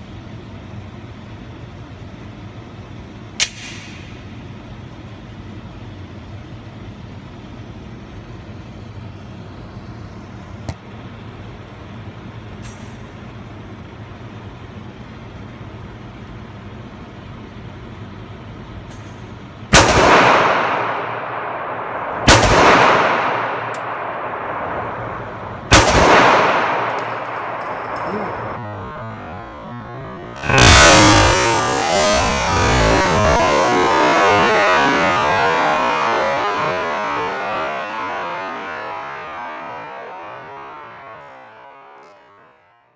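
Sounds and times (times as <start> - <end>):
low background hum: 0.0 - 41.9
gunshots with echo: 19.8 - 38.2.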